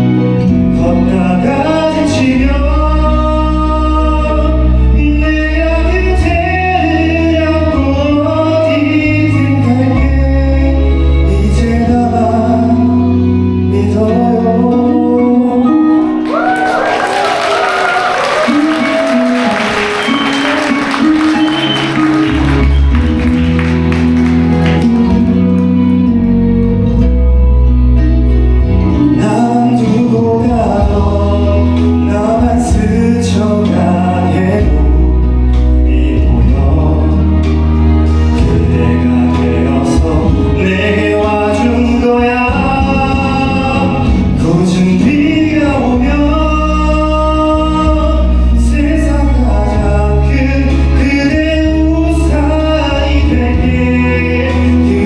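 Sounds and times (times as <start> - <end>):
man singing ballad: 0.0 - 16.5, 28.7 - 55.0
instrumental accompaniment with bass: 0.0 - 55.0.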